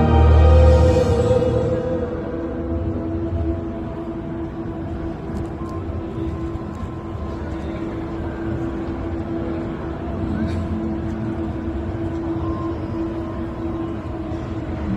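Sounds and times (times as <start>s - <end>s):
engine drone: 0.0s - 14.9s.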